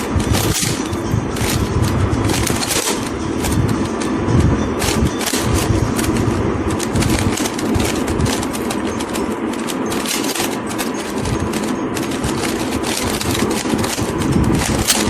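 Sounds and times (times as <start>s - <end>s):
puzzle cube clicking as turned: 0.0s - 4.2s, 4.8s - 15.0s.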